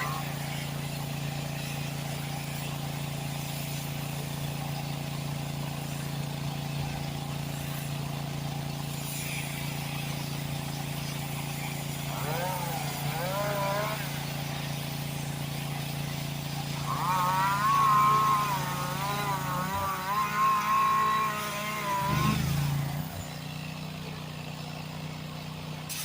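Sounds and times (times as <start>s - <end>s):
wavering whine: 0.0s - 0.9s, 11.9s - 23.5s
small engine humming: 0.0s - 26.0s.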